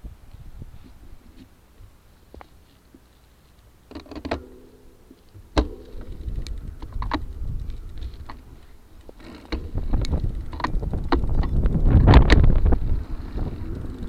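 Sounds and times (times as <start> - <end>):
bicycle clicking and rattling: 3.5 - 14.0
low rumble with rattles: 4.3 - 14.0.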